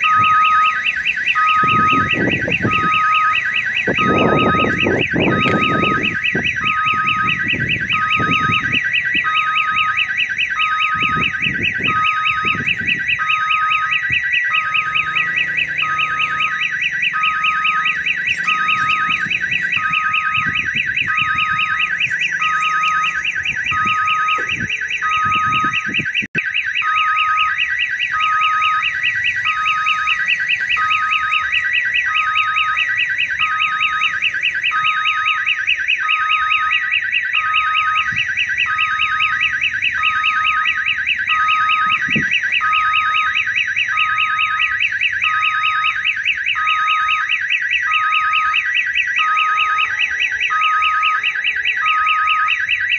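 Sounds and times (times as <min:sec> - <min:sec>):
low rumbles: 0:00.0 - 0:26.3
repeating beeps: 0:00.0 - 0:27.5
level crossing warning siren: 0:00.0 - 0:52.9.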